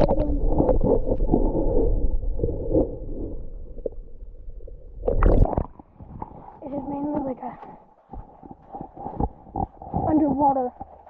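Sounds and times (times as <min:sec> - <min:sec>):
muffled underwater creek rushing: 0:00.0 - 0:11.0
knocks underwater: 0:05.0 - 0:11.0.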